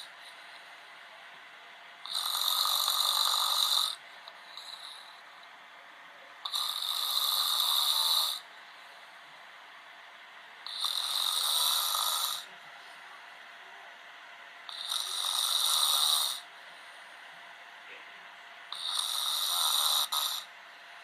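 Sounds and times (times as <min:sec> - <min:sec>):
man snoring: 0:02.1 - 0:05.2, 0:06.4 - 0:08.4, 0:10.7 - 0:12.5, 0:14.7 - 0:16.5, 0:18.7 - 0:20.5.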